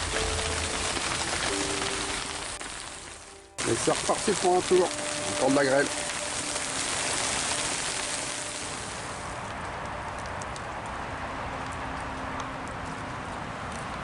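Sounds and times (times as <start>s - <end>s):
hail and rain pattering: 0.0s - 11.0s
hailstones ticking: 0.0s - 11.0s.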